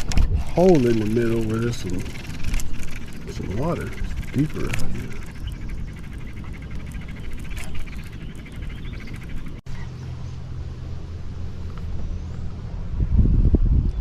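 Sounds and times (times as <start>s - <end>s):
birds calling: 0.0s - 10.4s
steady low hum: 0.0s - 14.0s
frogs calling: 0.6s - 9.6s.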